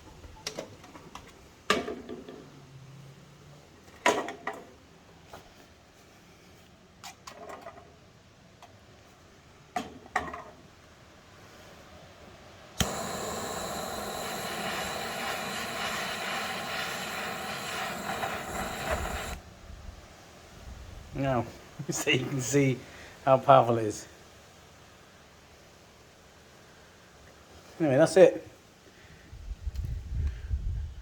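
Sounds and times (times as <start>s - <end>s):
jet torch lighter hissing flame: 12.8s - 19.4s
sharp clicks: 12.8s - 19.4s.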